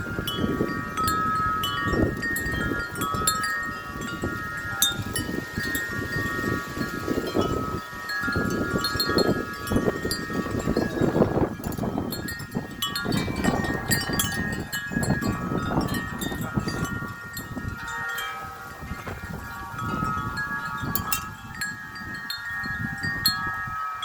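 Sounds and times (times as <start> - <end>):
gusty wind rumble: 0.0 - 24.0
wind chimes ringing: 0.0 - 24.0.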